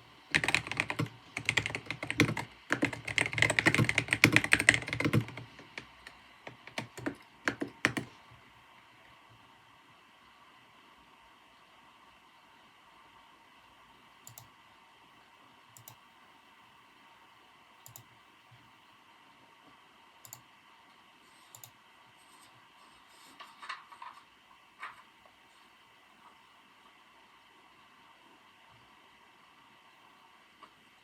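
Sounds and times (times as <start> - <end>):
computer keyboard keystrokes: 0.3 - 8.1, 15.8 - 16.0, 17.8 - 18.1.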